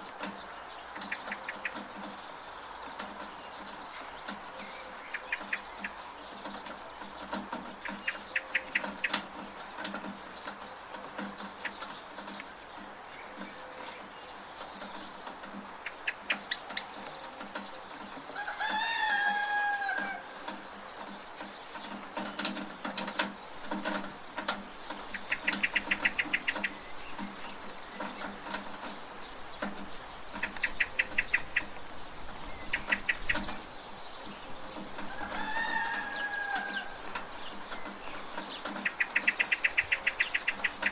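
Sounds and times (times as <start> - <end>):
water dripping from a gutter: 0.0 - 40.9
bird chattering: 3.6 - 10.5, 14.7 - 18.2, 24.9 - 29.0, 30.3 - 35.3, 36.7 - 40.9
rooster crowing: 18.4 - 20.5, 35.1 - 37.0.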